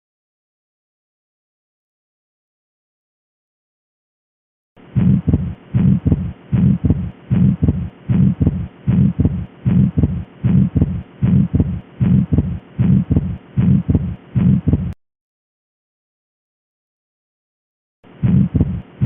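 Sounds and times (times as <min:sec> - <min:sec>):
heartbeat through stethoscope: 0:04.8 - 0:15.0, 0:18.1 - 0:19.0.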